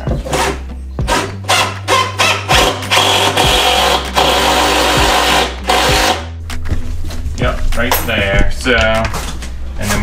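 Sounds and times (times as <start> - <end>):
handheld power tool motor running: 1.5 - 6.2.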